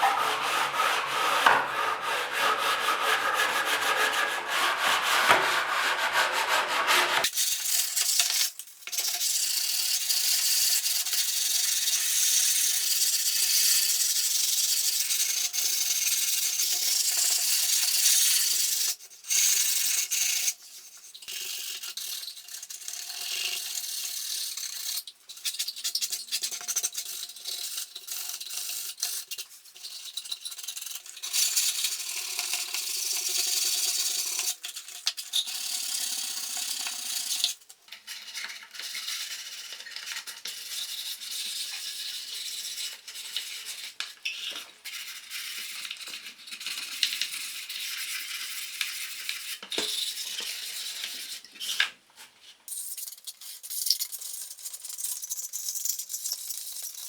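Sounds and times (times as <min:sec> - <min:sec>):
abrasive scraping on wood: 0:00.0 - 0:07.3.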